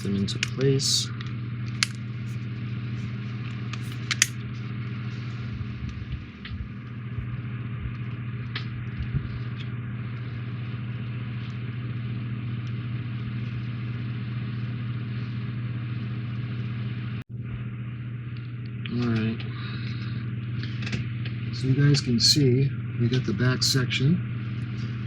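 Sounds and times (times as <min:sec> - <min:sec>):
low electrical hum: 0:00.0 - 0:25.0
plastic parts clicking: 0:03.7 - 0:04.3.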